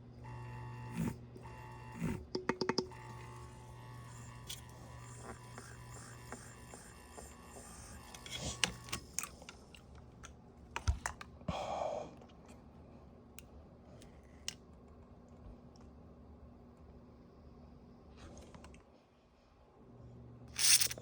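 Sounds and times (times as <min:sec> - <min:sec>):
exhaust fan motor humming: 0:00.0 - 0:10.3
fan parts clicking and knocking: 0:02.2 - 0:03.2.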